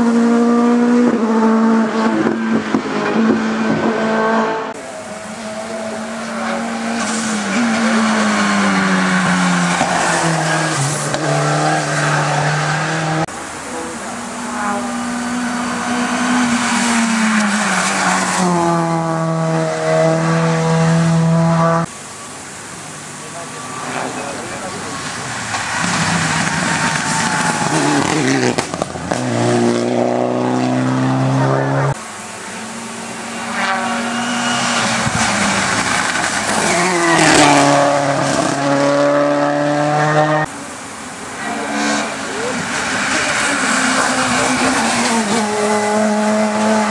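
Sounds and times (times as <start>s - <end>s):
race car engine at high revs: 0.0s - 46.9s
tyre squeal: 33.1s - 35.6s.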